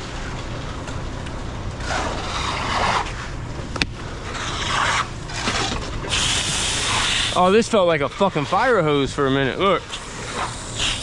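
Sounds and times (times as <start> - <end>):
machine engine rumble: 0.0 - 11.0
pressure hose spraying water: 4.1 - 11.0.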